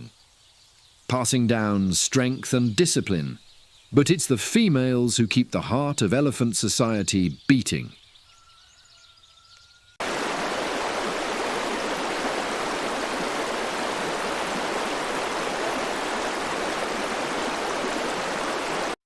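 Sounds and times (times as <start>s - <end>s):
rush of flowing water: 10.0s - 19.0s.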